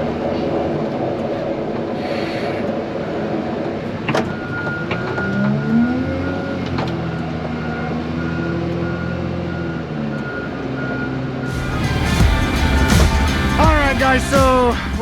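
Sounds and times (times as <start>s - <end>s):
reversing alarm beeping: 4.3s - 14.4s
diesel engine revving: 4.9s - 15.0s.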